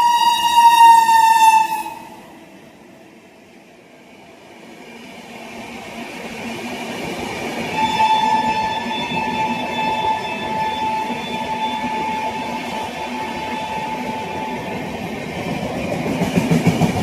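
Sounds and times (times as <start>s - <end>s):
locomotive horn blast: 0.0s - 2.2s
train rumble: 0.0s - 17.0s.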